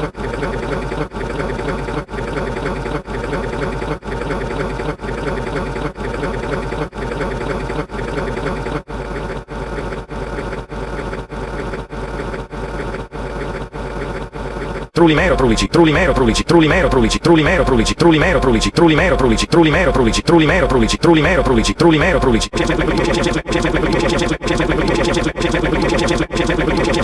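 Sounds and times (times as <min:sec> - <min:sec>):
looped mechanical buzzing: 0:15.0 - 0:27.0.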